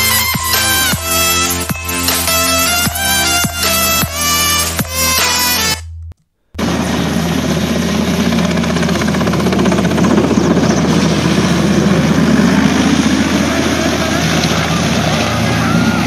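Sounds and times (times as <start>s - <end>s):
helicopter rotor and engines: 0.0s - 5.8s, 6.6s - 16.0s
music: 0.0s - 6.1s.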